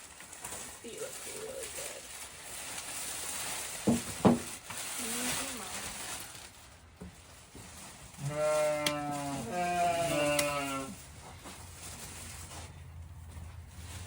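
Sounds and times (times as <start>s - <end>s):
sheep bleating: 8.2s - 11.0s.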